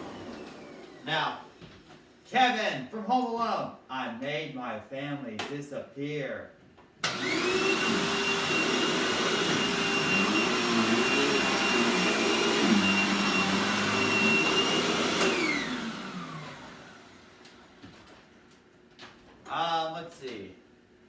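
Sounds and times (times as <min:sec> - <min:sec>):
vacuum cleaner motor whine: 0:00.0 - 0:01.6, 0:07.0 - 0:17.8.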